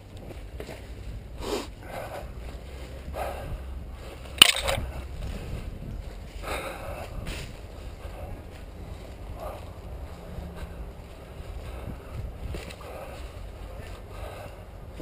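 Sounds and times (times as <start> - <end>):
footsteps through dry leaves: 0.0 - 15.0
wind rumble on microphone: 0.0 - 15.0
sharp crack: 4.4 - 4.9.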